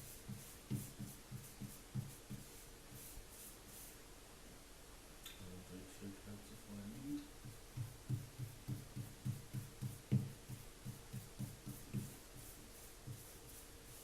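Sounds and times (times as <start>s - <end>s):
paint roller strokes on wall: 0.0s - 4.0s, 7.4s - 14.0s.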